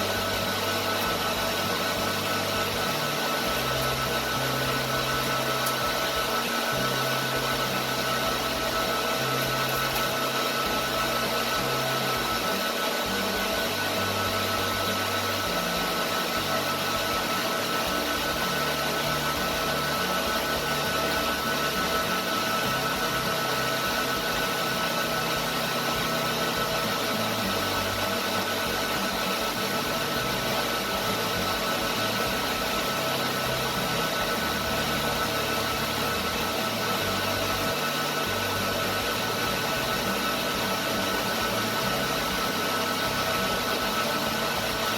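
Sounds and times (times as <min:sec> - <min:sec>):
cooling fans rushing: 0:00.0 - 0:44.9
faint steady whines: 0:00.0 - 0:44.9.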